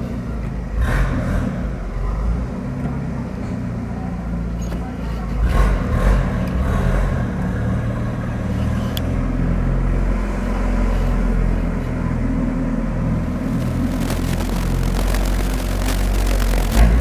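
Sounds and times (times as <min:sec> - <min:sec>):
open exhaust engine rumble: 0:00.0 - 0:17.0
exhaust crack: 0:13.0 - 0:17.0.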